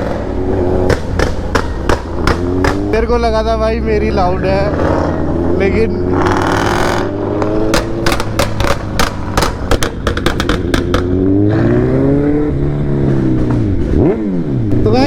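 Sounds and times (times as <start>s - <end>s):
exhaust crackling and popping: 0.0s - 3.5s, 6.2s - 11.6s
car engine revving: 0.0s - 15.0s.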